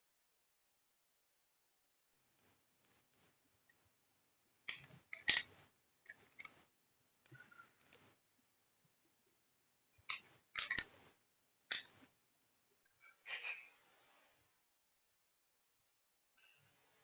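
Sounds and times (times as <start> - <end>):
plastic toy parts clicking: 4.7 - 6.6, 10.0 - 11.0.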